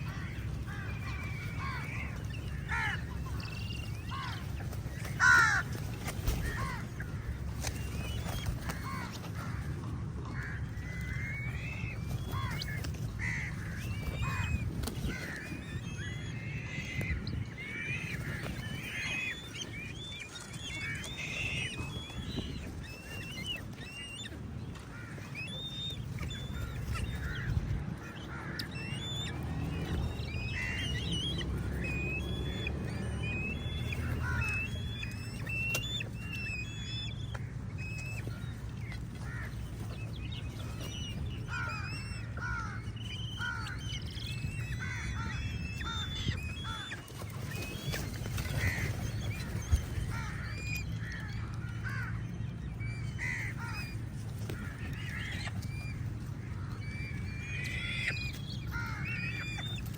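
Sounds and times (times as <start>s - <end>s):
crows cawing: 0.0s - 7.6s, 8.6s - 11.5s, 12.2s - 19.4s, 24.8s - 29.3s, 30.4s - 31.9s, 33.4s - 35.2s, 38.4s - 39.6s, 41.4s - 47.0s, 48.5s - 52.2s, 53.2s - 55.6s, 56.4s - 59.8s.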